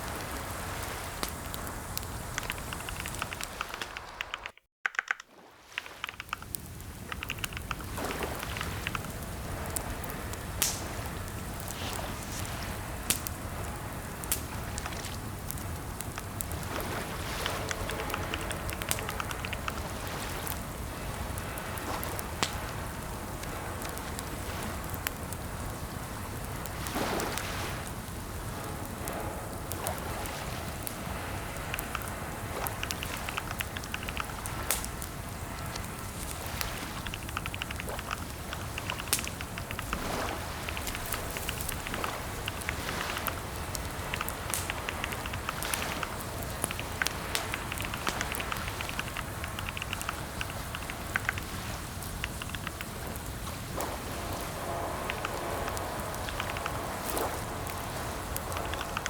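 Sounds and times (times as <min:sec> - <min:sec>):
steady hiss: 0:00.0 - 0:04.6, 0:06.0 - 0:59.0
keyboard key clicks: 0:02.4 - 0:09.1, 0:47.4 - 0:51.4.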